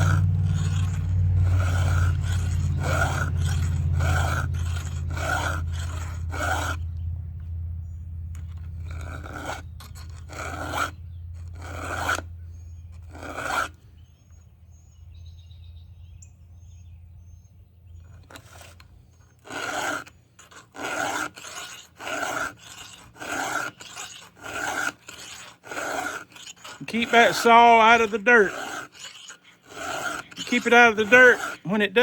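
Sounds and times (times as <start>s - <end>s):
file rasping on chainsaw chain: 0.0s - 7.5s, 8.2s - 14.3s, 18.0s - 32.0s
low steady hum: 0.0s - 19.7s.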